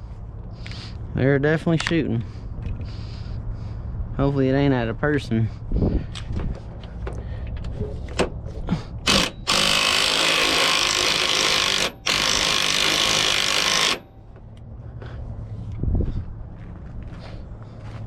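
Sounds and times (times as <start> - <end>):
power tool running: 9.0 - 14.2.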